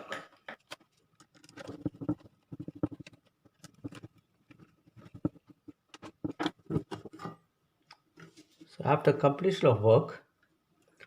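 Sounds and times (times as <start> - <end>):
clicks and taps of handling wiring: 0.4 - 8.3.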